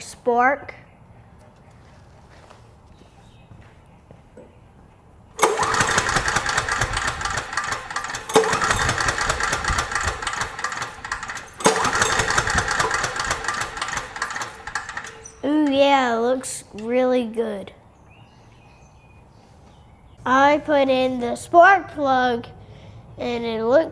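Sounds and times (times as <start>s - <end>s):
generator engine cranking: 5.4s - 17.0s.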